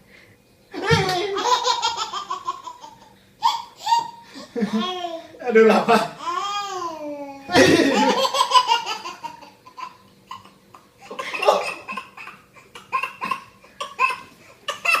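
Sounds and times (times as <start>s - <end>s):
person laughing hard: 7.5s - 8.3s, 11.2s - 11.9s.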